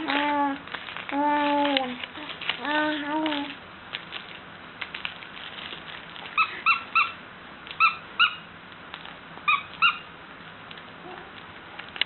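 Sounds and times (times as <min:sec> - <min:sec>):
toy squeaking: 0:06.4 - 0:07.2, 0:07.8 - 0:08.5, 0:09.5 - 0:10.1.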